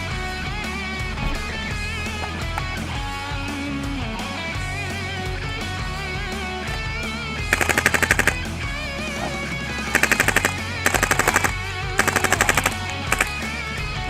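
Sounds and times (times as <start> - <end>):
rock music with electric guitar: 0.0 - 14.0
airsoft gun firing bursts: 7.4 - 8.8, 9.8 - 13.8.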